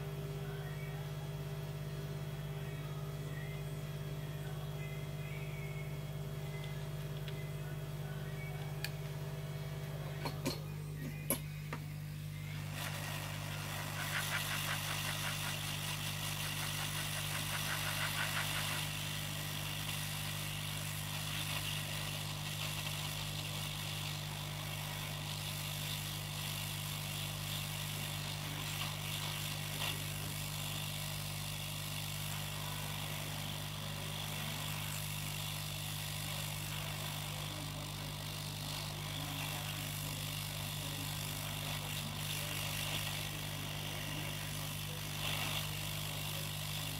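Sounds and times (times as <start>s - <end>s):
electrical hum: 0.0s - 46.9s
even hiss: 12.5s - 24.0s.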